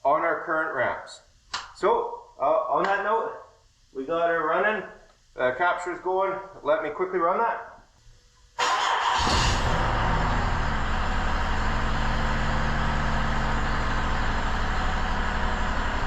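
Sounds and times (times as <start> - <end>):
car engine misfiring: 8.6 - 16.0.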